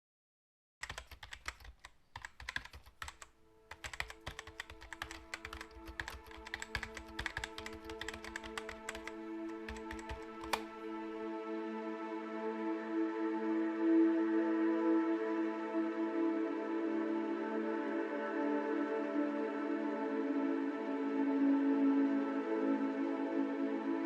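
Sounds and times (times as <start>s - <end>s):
keyboard typing clicks: 0.8s - 10.8s
soft sustained music: 3.4s - 24.0s.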